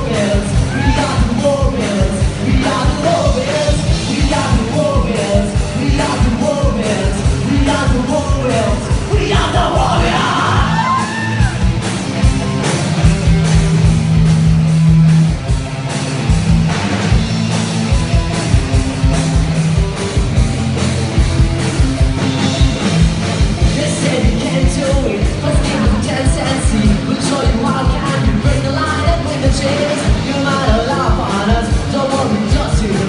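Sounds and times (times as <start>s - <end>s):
drums beating fast: 0.0s - 33.0s
rock band playing live: 0.0s - 33.0s
person yelling vocals: 0.5s - 1.4s, 9.2s - 11.6s.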